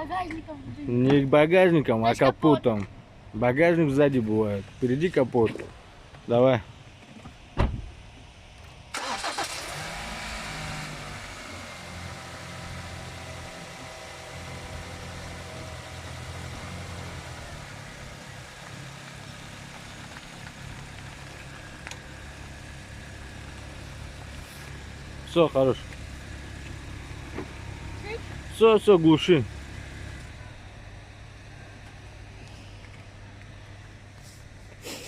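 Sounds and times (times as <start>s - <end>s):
car engine starting and idling: 8.6s - 34.8s.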